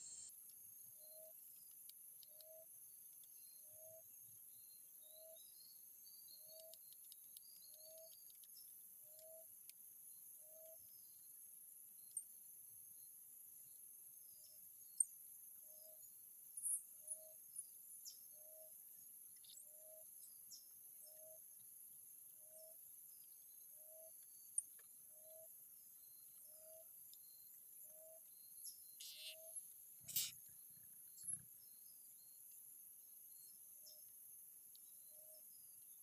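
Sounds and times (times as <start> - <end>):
sharp high parrot chirps: 0.0 - 0.3, 29.0 - 30.4
insect chorus: 0.0 - 36.0.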